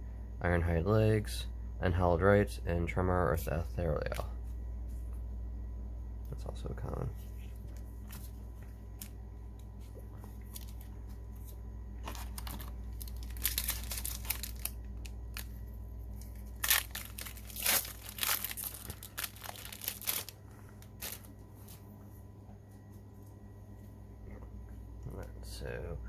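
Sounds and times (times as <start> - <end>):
wrapper tearing and crinkling: 12.1 - 15.5, 16.2 - 21.3.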